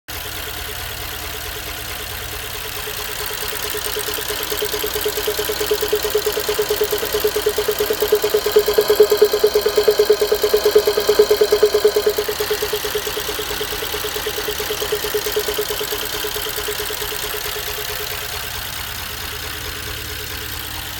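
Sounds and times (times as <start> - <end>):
car engine running: 0.2 - 20.9
pulsing fluttering turbo tone: 3.0 - 19.6.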